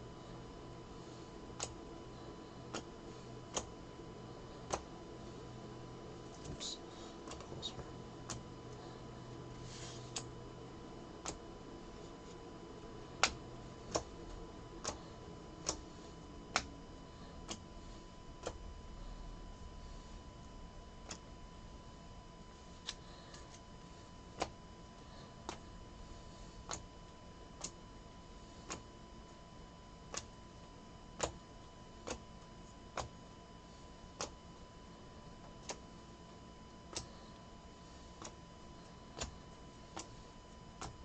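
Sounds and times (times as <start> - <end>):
cards clicking onto piles: 7.2 - 8.4, 13.2 - 14.1.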